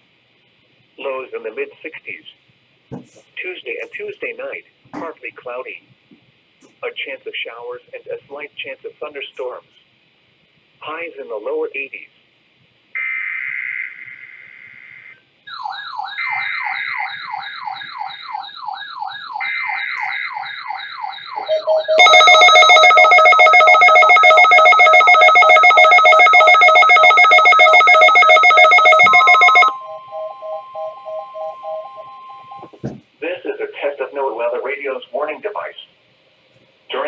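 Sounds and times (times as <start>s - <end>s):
pulsing electronic alarm: 15.5s - 32.7s
steady warning tone: 21.4s - 32.7s.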